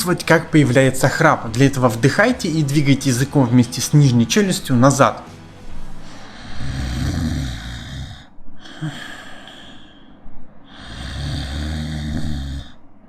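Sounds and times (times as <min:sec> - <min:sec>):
man snoring: 0:06.0 - 0:10.0, 0:10.7 - 0:12.8.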